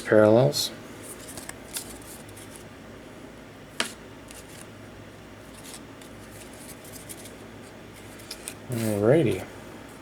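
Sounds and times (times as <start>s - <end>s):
cards and foil packs handled: 1.1s - 2.7s, 5.5s - 9.0s.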